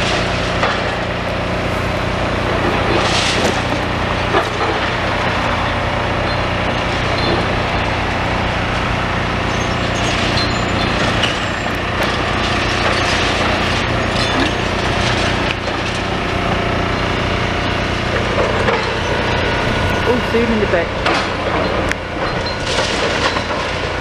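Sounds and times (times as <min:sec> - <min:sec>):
building material crunching: 0:00.0 - 0:05.4
excavator diesel engine running: 0:00.0 - 0:24.0.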